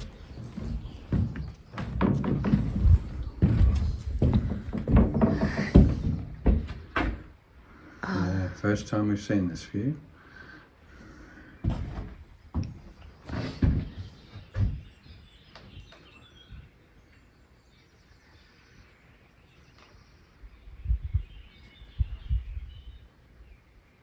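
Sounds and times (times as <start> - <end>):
dull low thuds: 0.0 - 7.3
birds chirping faintly: 0.0 - 24.0.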